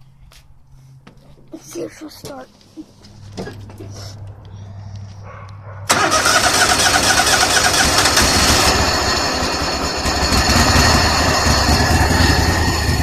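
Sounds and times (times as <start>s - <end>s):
tractor engine cranking: 5.9s - 13.0s.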